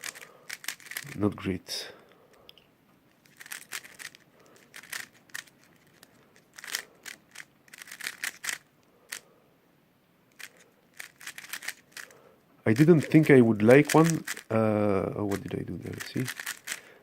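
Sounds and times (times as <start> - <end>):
puzzle cube plastic clicks: 0.0 - 1.2, 3.1 - 9.2, 10.3 - 14.5, 15.3 - 16.9.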